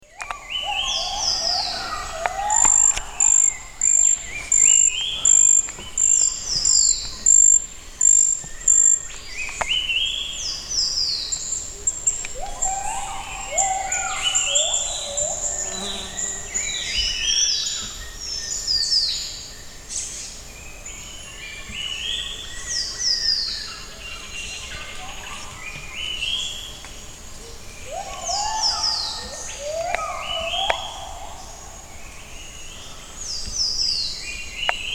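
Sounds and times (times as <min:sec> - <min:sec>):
gibbons whooping: 0:00.6 - 0:05.5, 0:12.3 - 0:16.4, 0:27.8 - 0:31.8
high-pitched pulsing call: 0:01.2 - 0:06.3.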